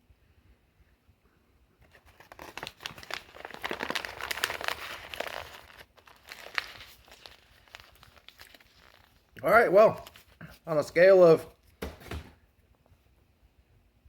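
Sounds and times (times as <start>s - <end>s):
paper wrapping crumpling: 1.8s - 10.9s.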